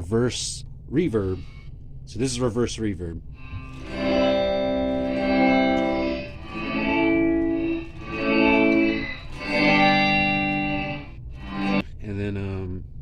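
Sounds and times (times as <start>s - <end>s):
electric guitar reverse reverb chords: 3.4s - 11.8s.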